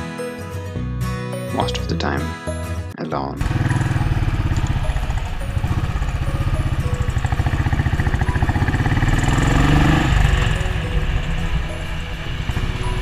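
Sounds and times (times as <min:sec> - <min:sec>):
motorcycle engine accelerating: 0:03.4 - 0:13.0.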